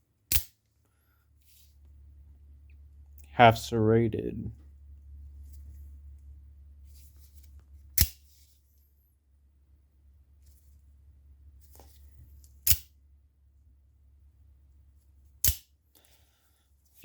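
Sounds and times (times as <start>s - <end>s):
low steady hum: 1.8s - 8.0s
knife blade snapping: 8.0s - 8.2s, 15.4s - 15.6s.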